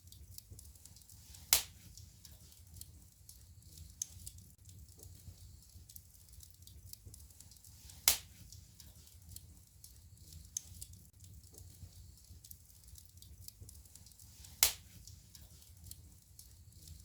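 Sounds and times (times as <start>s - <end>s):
fire pops: 0.0s - 17.0s
wood fire crackling: 0.0s - 17.0s.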